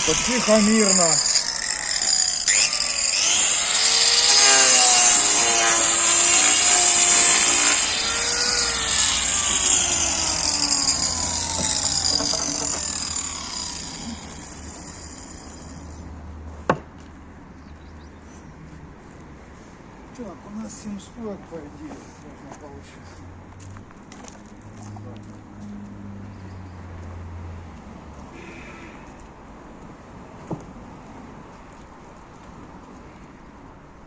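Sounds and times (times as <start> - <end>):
angle grinder cutting wood: 0.0 - 16.0.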